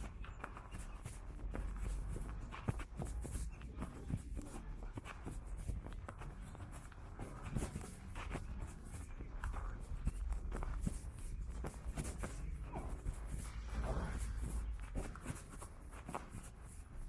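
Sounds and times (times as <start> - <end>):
footsteps on hard paving: 0.0 - 17.0
steady low rumble: 0.0 - 17.0.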